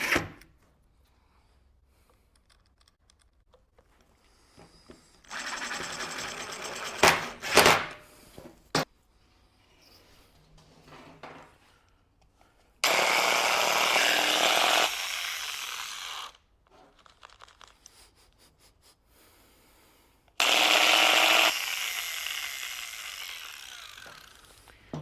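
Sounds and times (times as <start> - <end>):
angle grinder running and winding down: 5.3 - 7.0, 12.8 - 16.4, 20.4 - 24.7.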